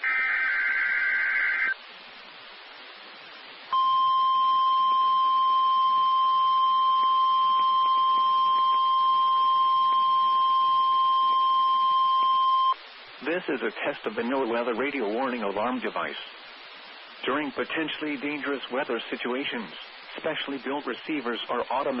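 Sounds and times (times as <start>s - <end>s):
buzzy warbling data burst: 0.0s - 1.8s
radio hiss: 0.0s - 22.0s.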